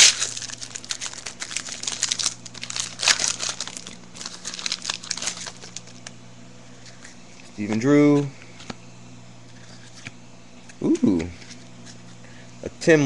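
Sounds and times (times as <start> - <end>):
foil wrapper crinkling: 0.0 - 6.2.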